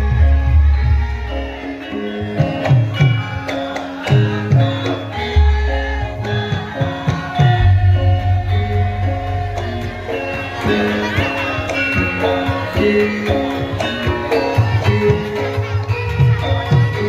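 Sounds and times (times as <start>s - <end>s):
metallophone notes: 1.2s - 17.0s
hand drum strokes: 4.1s - 17.0s.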